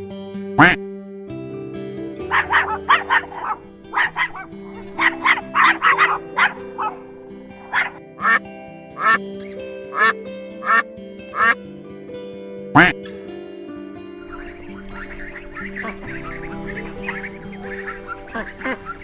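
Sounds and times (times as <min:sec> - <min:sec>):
background music: 0:00.0 - 0:19.0
ducks quacking: 0:00.6 - 0:00.8, 0:02.3 - 0:08.4, 0:09.0 - 0:09.2, 0:09.9 - 0:10.8, 0:11.4 - 0:11.6, 0:12.8 - 0:13.0, 0:14.2 - 0:19.0.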